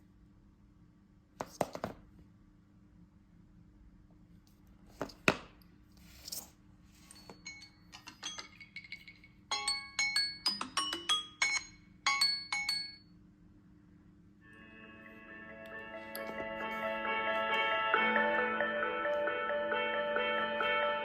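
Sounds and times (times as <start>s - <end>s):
alarm tone chime melody: 14.4s - 21.0s.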